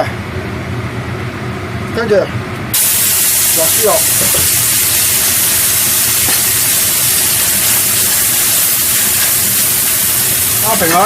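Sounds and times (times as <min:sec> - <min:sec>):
meat sizzling in hot oil: 0:02.8 - 0:11.0.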